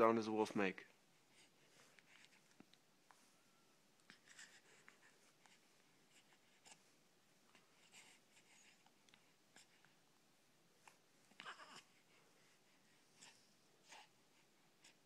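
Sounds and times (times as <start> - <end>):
faint scratchy rustles: 0.3 - 10.0.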